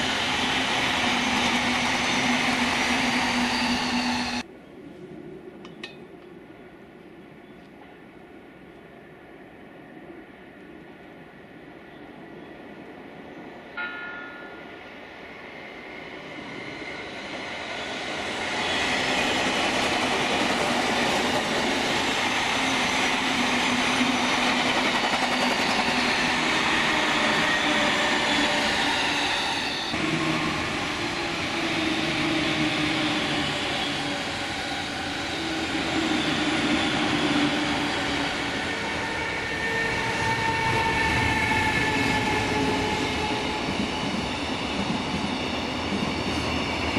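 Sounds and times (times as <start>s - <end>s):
train wheels rumbling on rail: 0.0s - 4.5s, 13.8s - 46.9s
train whining: 0.0s - 4.5s, 12.2s - 46.9s.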